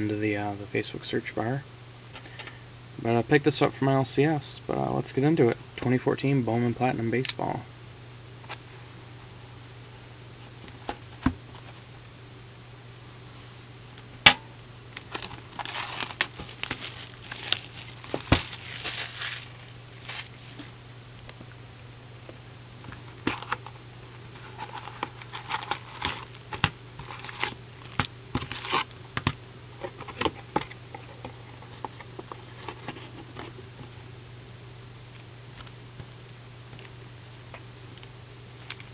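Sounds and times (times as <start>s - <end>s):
faint steady hum: 0.0s - 38.9s
wrapping crinkling and tearing: 14.8s - 20.7s, 24.3s - 29.0s.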